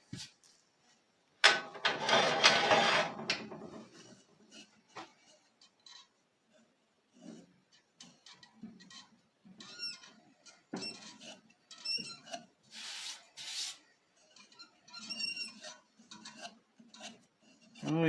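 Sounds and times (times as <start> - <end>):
lathe scraper scraping wood: 1.9 - 3.2, 14.9 - 18.0.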